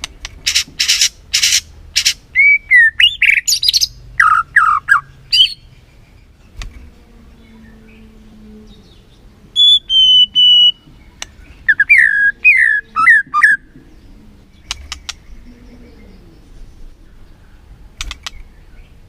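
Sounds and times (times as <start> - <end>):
sharp bird clicks: 0.0 - 2.2, 6.5 - 6.8, 10.6 - 12.1, 14.5 - 15.4, 17.9 - 18.6
bird whistling song: 0.8 - 5.7, 8.7 - 16.7.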